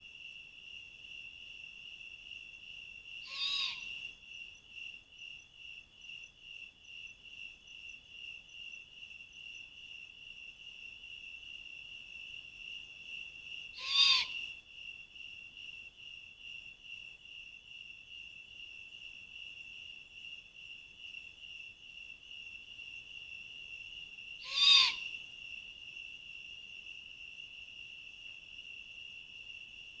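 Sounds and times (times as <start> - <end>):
insect chorus trilling: 3.2 - 4.2, 13.6 - 14.6, 24.4 - 25.6
loud animal calls: 13.8 - 14.4, 24.4 - 25.1.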